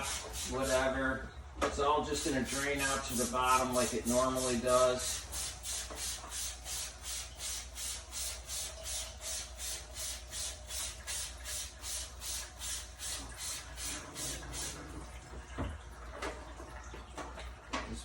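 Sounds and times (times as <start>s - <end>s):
hand sprayer hissing sprays: 0.0s - 1.0s, 2.2s - 14.8s.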